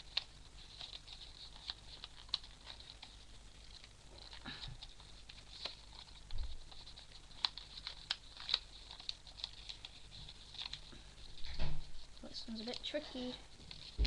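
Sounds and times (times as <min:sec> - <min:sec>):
faint fan hum: 0:00.0 - 0:14.0
paper rustling and crinkling: 0:00.0 - 0:14.0.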